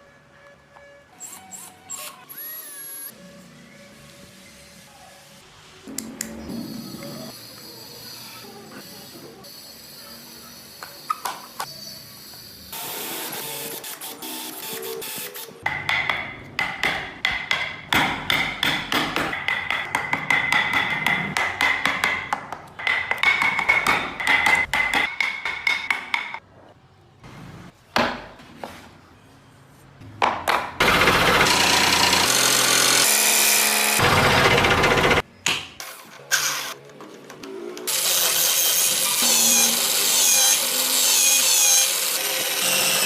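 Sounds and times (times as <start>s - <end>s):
power tool running: 30.8s - 35.2s, 37.9s - 43.0s.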